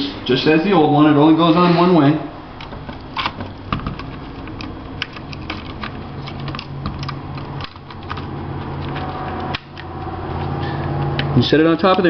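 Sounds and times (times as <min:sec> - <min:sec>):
plastic keyboard clicks and rattles: 0:02.6 - 0:12.0.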